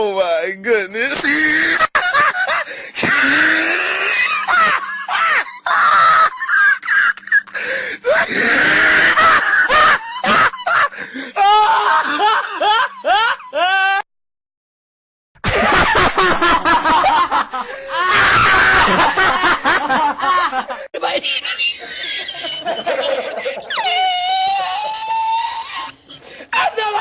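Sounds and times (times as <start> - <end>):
man laughing uncontrollably: 1.1 - 14.0, 15.4 - 20.9, 21.7 - 25.9
breaths: 2.6 - 3.6, 7.5 - 8.4, 10.9 - 11.4, 17.6 - 18.0, 26.0 - 26.6.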